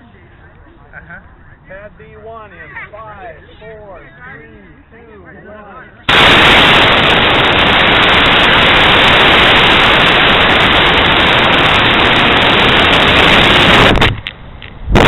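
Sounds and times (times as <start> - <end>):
rocket motor rushing hiss: 6.1 - 14.2.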